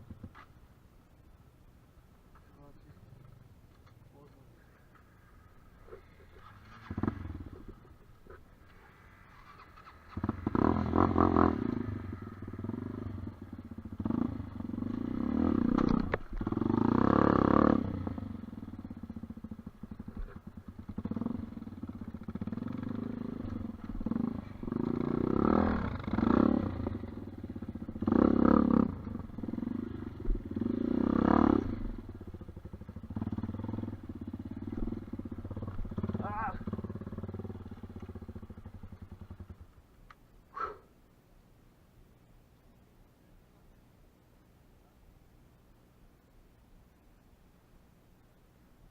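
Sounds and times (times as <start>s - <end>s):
dirt bike engine revving: 6.3s - 7.9s, 9.2s - 39.6s.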